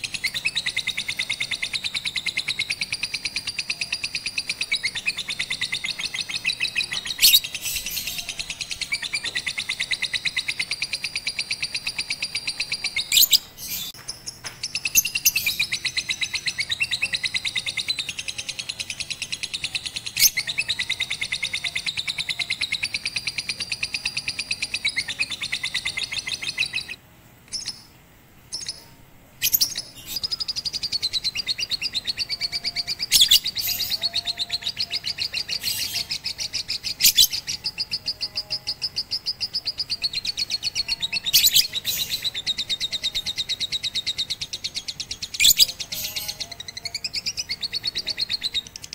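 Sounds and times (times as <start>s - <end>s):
lovebird chattering trill: 0.0s - 14.0s, 29.5s - 48.9s.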